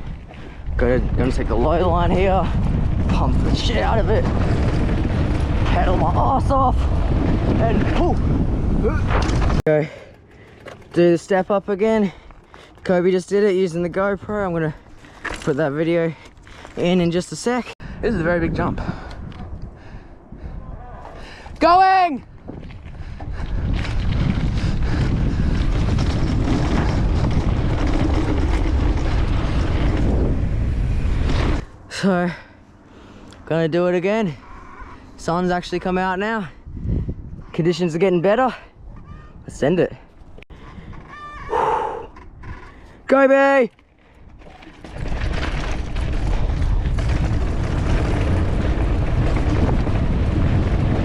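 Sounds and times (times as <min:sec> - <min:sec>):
wind rushing over microphone: 0:00.0 - 0:09.6, 0:16.6 - 0:31.9, 0:34.3 - 0:42.9, 0:44.2 - 0:51.0
bike tyre noise on dirt: 0:00.0 - 0:31.9, 0:43.8 - 0:51.0.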